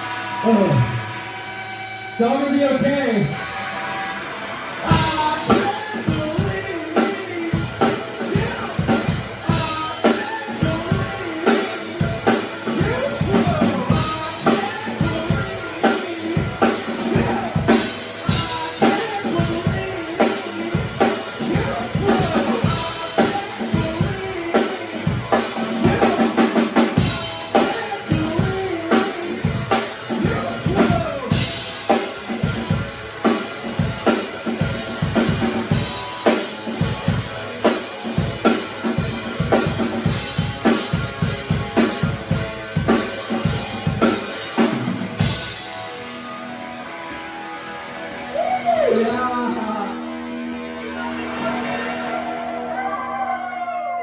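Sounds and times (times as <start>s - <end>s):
live band playing: 0.0s - 54.0s
drum kit beat: 4.9s - 46.2s.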